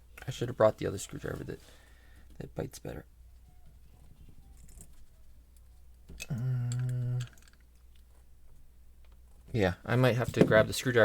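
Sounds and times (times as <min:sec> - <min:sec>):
man humming: 0:06.1 - 0:07.5.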